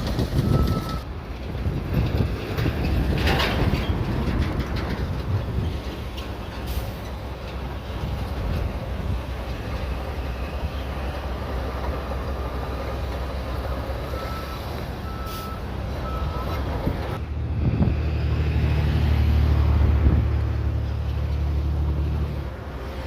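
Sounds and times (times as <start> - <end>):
bulldozer diesel engine running: 0.0 - 23.0
reversing alarm beeping: 0.4 - 1.1, 14.1 - 16.6.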